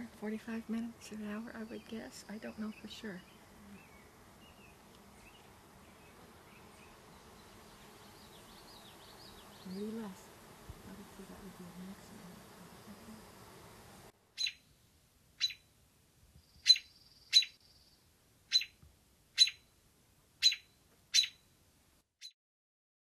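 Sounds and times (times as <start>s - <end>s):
low humming of bees: 0.0s - 14.5s
bird chirping sharply: 14.4s - 14.7s, 15.4s - 15.7s, 16.5s - 17.9s, 18.5s - 18.8s, 19.4s - 19.7s, 20.4s - 21.4s.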